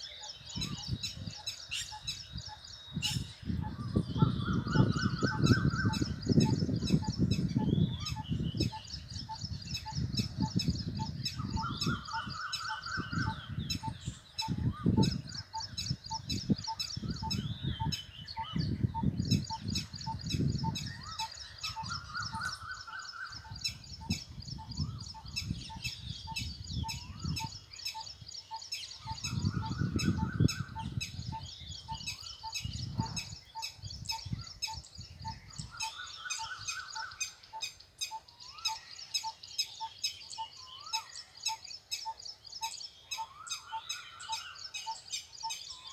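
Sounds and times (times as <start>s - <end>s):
low rumbling gusts: 3.0s - 12.3s, 12.9s - 21.2s, 29.2s - 35.8s.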